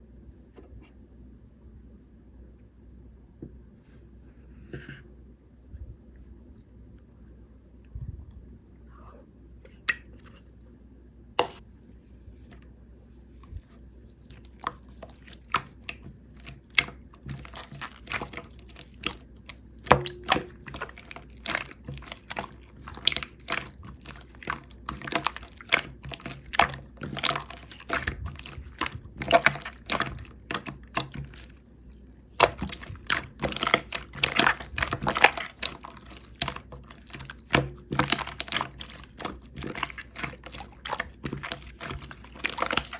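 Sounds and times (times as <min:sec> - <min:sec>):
close-miked eating crunching: 0:14.2 - 0:42.9.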